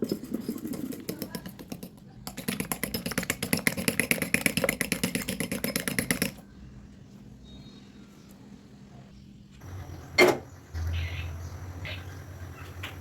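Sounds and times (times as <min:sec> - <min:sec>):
utensil beating batter in bowl: 0:00.0 - 0:06.4.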